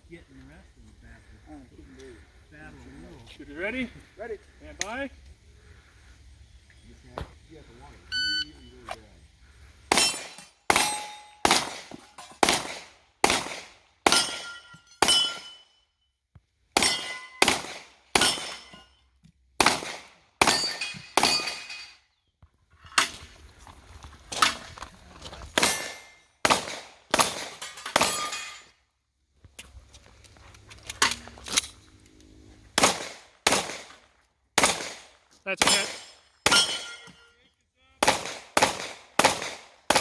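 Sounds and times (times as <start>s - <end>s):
steel targets ringing: 9.9s - 12.3s, 14.1s - 15.8s, 16.8s - 17.5s, 20.4s - 22.0s, 27.6s - 28.7s, 35.6s - 37.4s
pistol shots: 9.9s - 15.5s, 16.8s - 18.7s, 19.6s - 21.6s, 25.6s - 28.3s, 32.8s - 34.0s, 34.6s - 37.0s, 38.0s - 40.0s.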